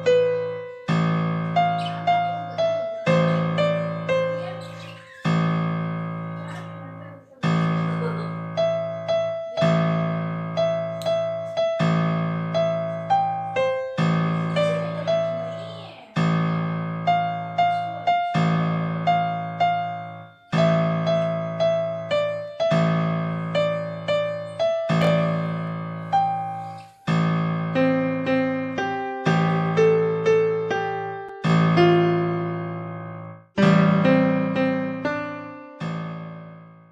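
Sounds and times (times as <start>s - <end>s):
gentle piano melody: 0.0s - 36.9s.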